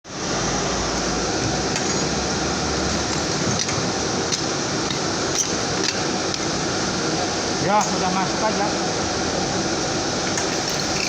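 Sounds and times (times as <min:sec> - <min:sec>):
furnace burner rushing: 0:00.1 - 0:11.0.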